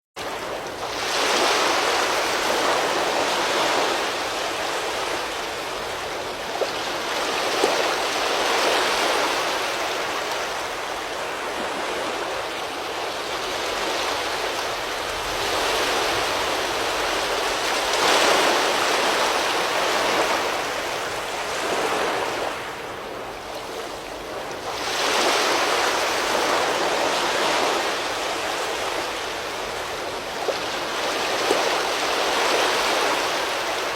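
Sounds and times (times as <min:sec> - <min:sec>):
strong gusting wind: 0:07.0 - 0:23.4.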